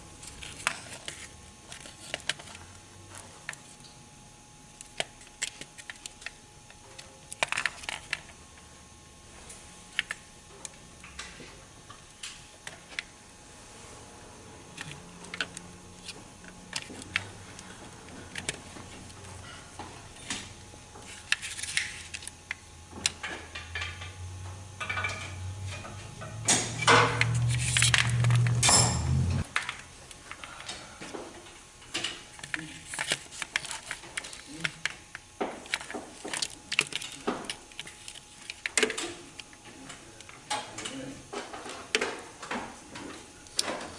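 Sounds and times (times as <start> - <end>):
low hum: 23.5 - 29.5
metal tools clicking and clinking: 24.8 - 29.2.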